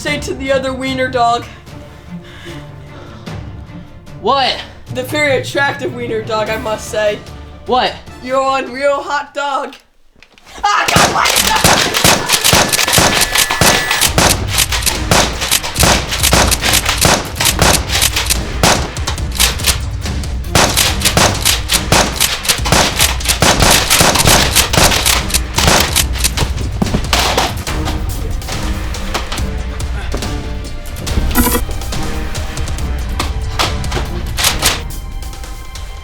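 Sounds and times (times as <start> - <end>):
rapid gunfire bursts: 11.0 - 19.9, 20.5 - 26.5.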